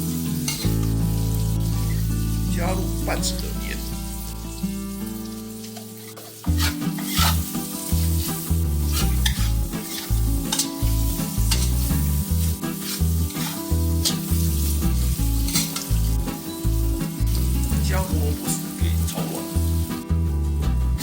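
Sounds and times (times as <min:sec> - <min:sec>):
carrot sizzling in a pan: 0:00.0 - 0:21.0
spatula scraping a pan: 0:00.4 - 0:00.8, 0:05.6 - 0:16.4.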